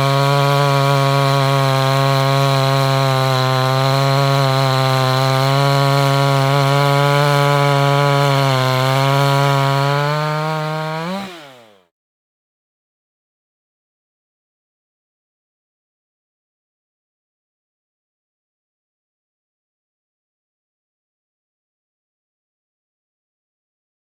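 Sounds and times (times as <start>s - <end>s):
chainsaw cutting wood: 0.0s - 11.9s.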